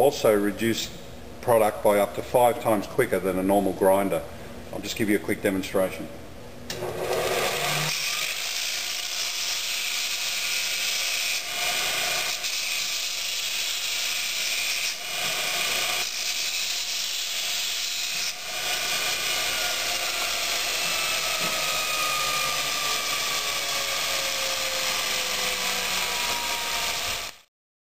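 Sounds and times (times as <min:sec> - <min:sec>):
belt grinder grinding metal: 0:06.8 - 0:27.4.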